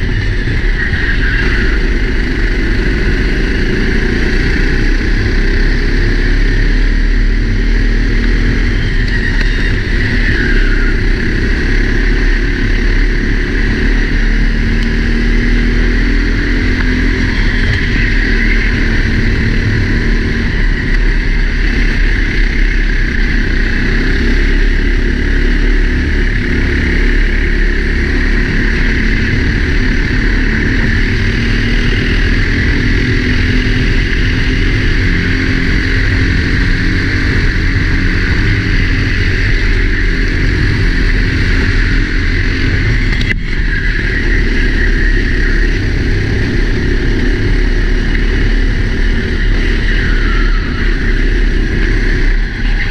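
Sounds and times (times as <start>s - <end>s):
kart engine droning: 0.0s - 52.9s
wind rush over microphone: 0.0s - 52.9s.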